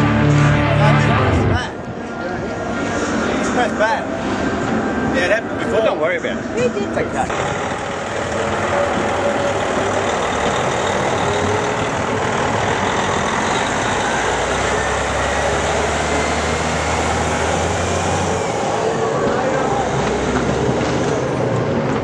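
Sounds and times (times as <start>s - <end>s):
large vehicle engine running: 0.0s - 22.0s.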